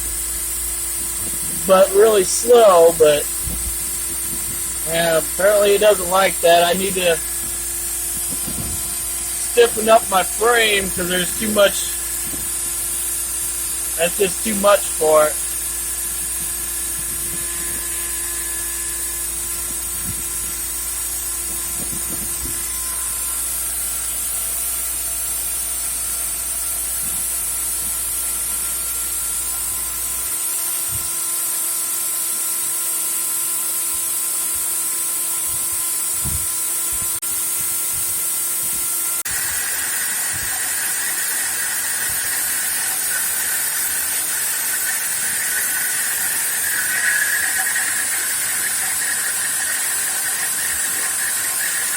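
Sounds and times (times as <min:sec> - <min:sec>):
router spindle milling: 0:00.1 - 0:30.8, 0:37.4 - 0:51.9
high ringing chatter tone: 0:01.0 - 0:23.9, 0:39.2 - 0:51.9.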